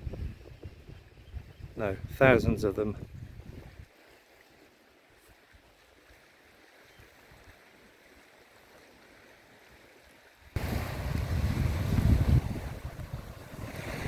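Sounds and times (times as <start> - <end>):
wind buffeting microphone: 0.0 - 3.9, 10.6 - 14.0.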